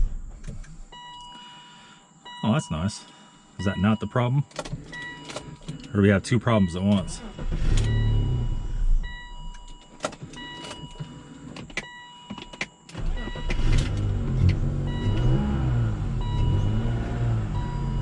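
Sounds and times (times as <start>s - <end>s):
high warning chime tones: 2.3s - 11.0s.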